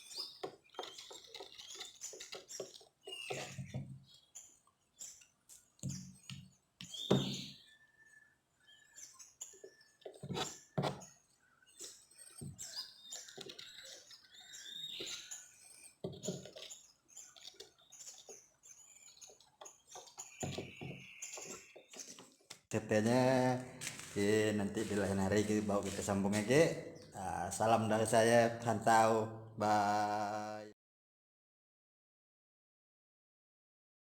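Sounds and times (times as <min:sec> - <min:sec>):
chicks chirping: 0:08.6 - 0:28.8.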